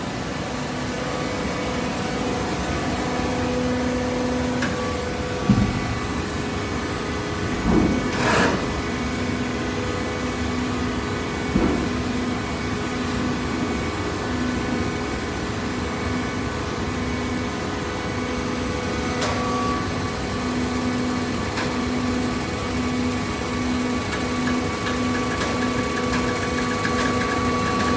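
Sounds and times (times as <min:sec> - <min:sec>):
hydraulic baler motor hum: 0:02.8 - 0:09.0, 0:18.6 - 0:27.9
machine clunks and knocks: 0:04.6 - 0:06.1.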